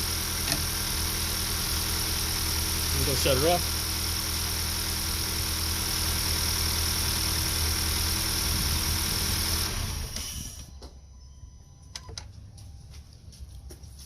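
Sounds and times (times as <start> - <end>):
car engine idling: 0.0 - 10.7.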